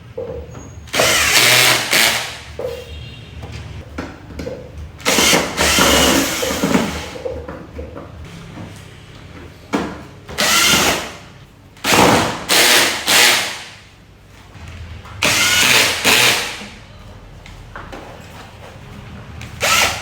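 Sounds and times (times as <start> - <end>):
power drill running: 0.9 - 2.4, 5.1 - 7.0, 10.4 - 11.0, 12.5 - 13.6, 15.2 - 16.6, 19.6 - 20.0.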